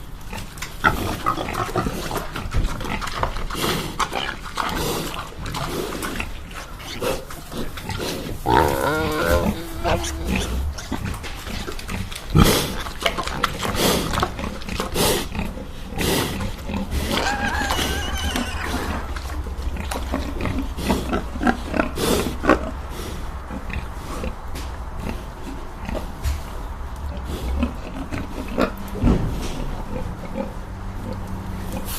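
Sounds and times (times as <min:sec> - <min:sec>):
pig grunting: 0:00.3 - 0:24.4
steady low hum: 0:07.2 - 0:13.3
pig squealing: 0:08.4 - 0:11.7, 0:16.9 - 0:20.0.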